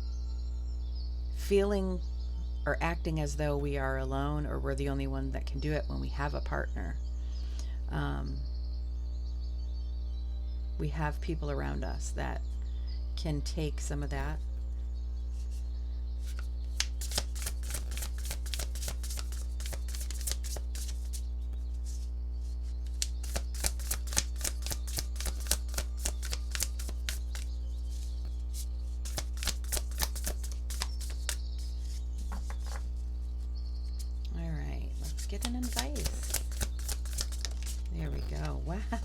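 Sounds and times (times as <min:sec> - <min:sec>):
cards being shuffled: 0:16.2 - 0:33.4, 0:34.9 - 0:39.0.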